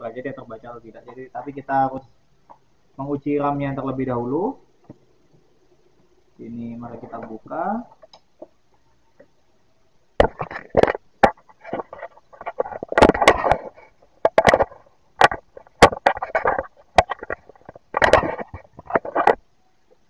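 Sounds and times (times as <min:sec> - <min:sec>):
plastic clicks and knocks of laptop: 0:10.2 - 0:19.4.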